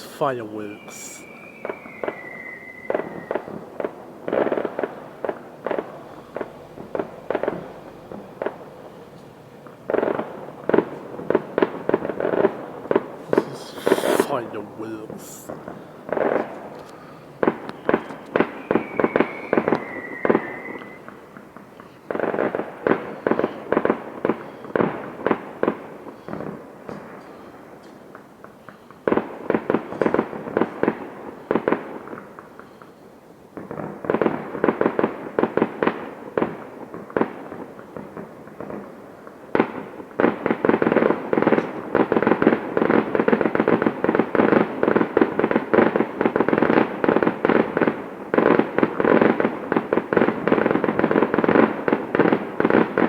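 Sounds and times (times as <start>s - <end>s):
fireworks bangs and crackles: 0.0s - 53.0s
firework whistle: 0.8s - 3.7s, 17.6s - 21.4s.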